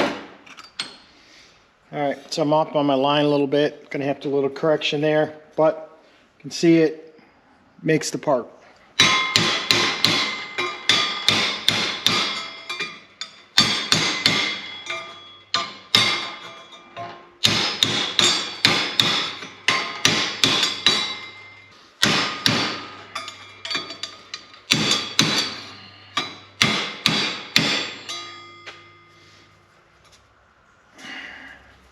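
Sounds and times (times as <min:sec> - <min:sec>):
hammer ringing on sheet steel: 0:09.0 - 0:29.6.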